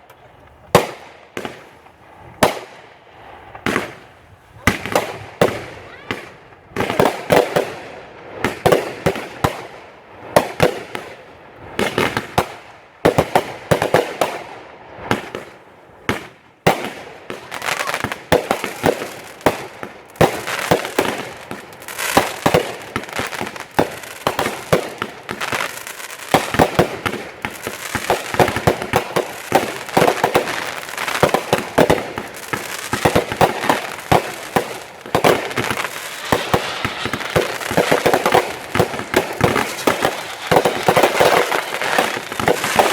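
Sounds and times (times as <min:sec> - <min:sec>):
fireworks crackling: 0:00.0 - 0:42.9
firework shells bursting with bangs: 0:18.0 - 0:42.9.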